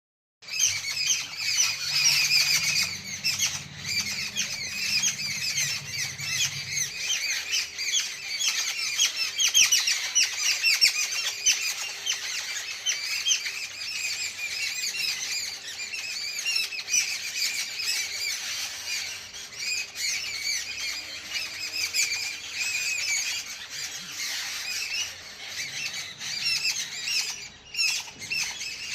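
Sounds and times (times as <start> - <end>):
flock of birds chirping: 0.4 - 28.9.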